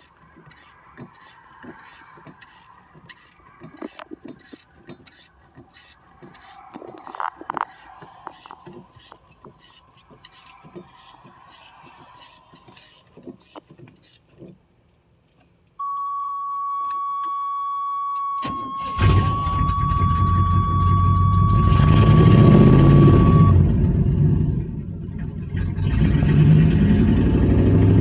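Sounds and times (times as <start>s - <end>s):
high warning chime tone: 15.8s - 24.3s
engine starter cranking: 18.2s - 28.0s
engine running and revving: 19.0s - 28.0s.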